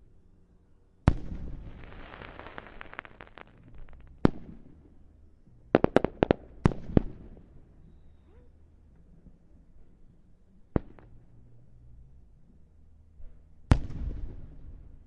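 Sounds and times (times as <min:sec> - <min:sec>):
fireworks crackling pops: 0:01.1 - 0:04.7, 0:05.7 - 0:07.1
fireworks sharp bangs: 0:01.1 - 0:04.8, 0:05.7 - 0:07.3.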